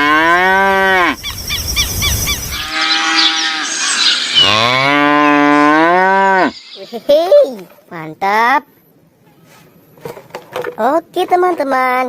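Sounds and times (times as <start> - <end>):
cow mooing: 0.0 - 1.2, 2.6 - 6.6
chirping: 1.0 - 7.3.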